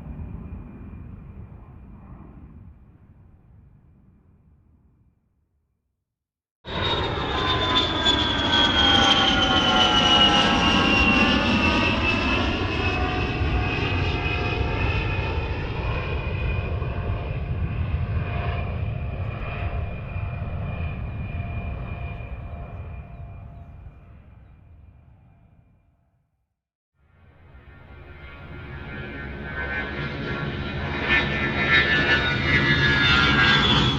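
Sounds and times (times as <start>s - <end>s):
fighter jet engine roar: 6.7s - 25.7s, 27.2s - 33.9s.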